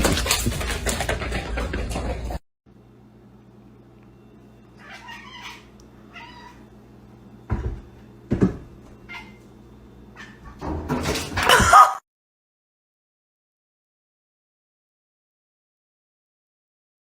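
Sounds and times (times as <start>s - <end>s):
cat meowing: 4.8s - 6.7s.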